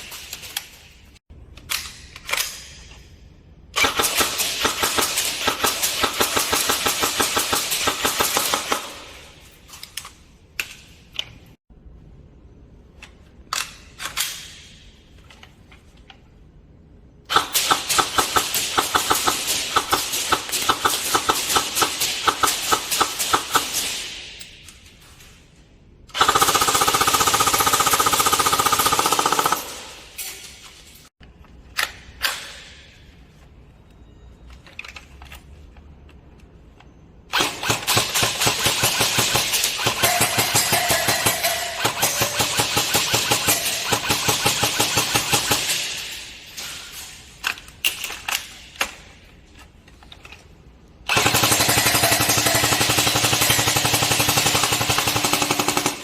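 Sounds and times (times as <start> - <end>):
airsoft guns firing: 37.3 - 46.3, 51.1 - 56.0.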